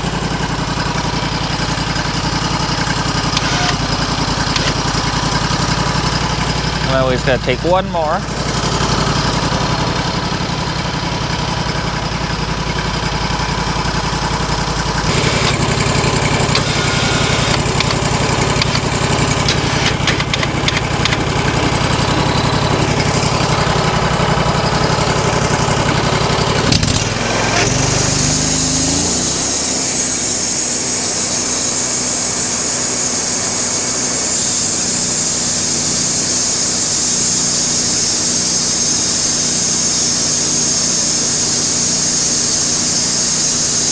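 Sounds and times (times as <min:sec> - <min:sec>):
sawmill engine running: 0:00.0 - 0:43.9
saw cutting through log: 0:01.1 - 0:07.2, 0:15.0 - 0:43.9.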